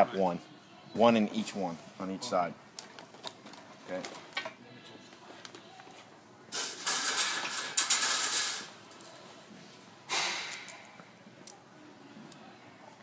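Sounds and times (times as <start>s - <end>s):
parts rustling and scraping: 2.8s - 10.9s.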